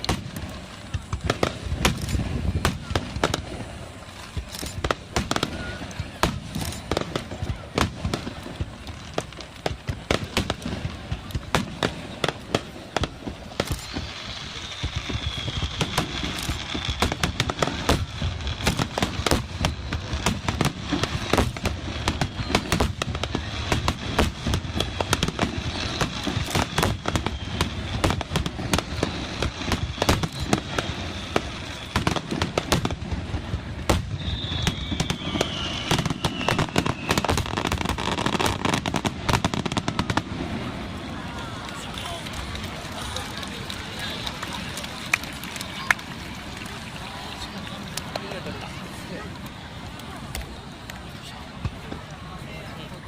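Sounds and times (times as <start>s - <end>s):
fireworks bangs and crackles: 0.0s - 53.0s
faint high falling whistle: 34.1s - 37.4s.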